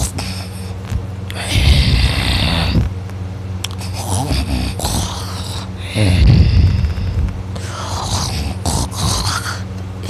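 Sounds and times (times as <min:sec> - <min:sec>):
man snoring loudly: 0:00.0 - 0:02.9, 0:03.7 - 0:09.7.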